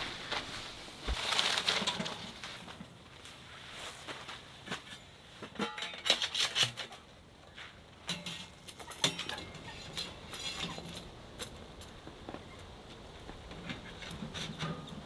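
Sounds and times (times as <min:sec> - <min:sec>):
clicks and knocks of objects: 0:00.0 - 0:02.9
light rustling: 0:00.0 - 0:04.9.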